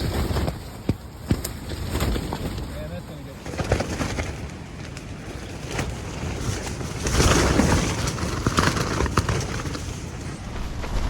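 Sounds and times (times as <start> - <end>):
gusty wind buffeting microphone: 3.8 - 11.0.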